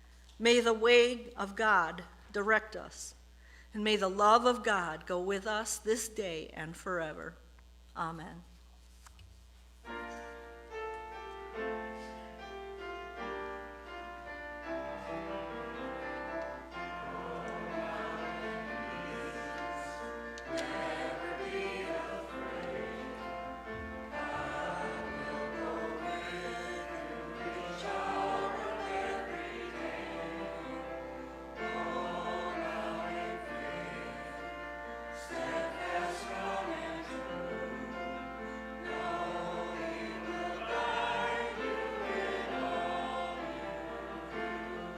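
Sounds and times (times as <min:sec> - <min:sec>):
choir singing: 0:14.2 - 0:44.9.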